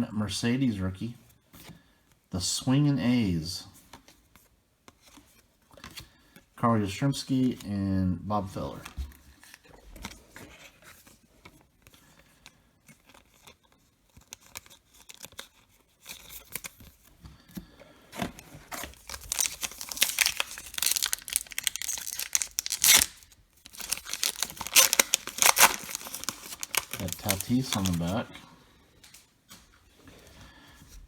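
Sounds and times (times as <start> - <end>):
wrapper handling ticks: 18.7 - 28.2
wrapper crackling and tearing: 18.7 - 28.3.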